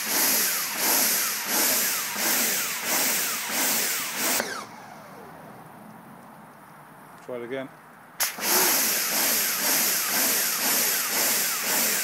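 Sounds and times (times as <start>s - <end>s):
pressure washer pulsing: 0.0s - 5.3s, 8.2s - 12.0s.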